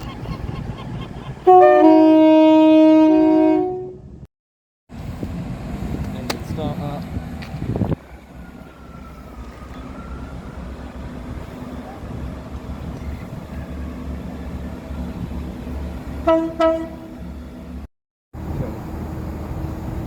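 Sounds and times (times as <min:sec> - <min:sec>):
train rumbling: 0:00.0 - 0:04.3, 0:04.9 - 0:20.0
train horn blasts: 0:01.5 - 0:04.2, 0:16.2 - 0:17.3.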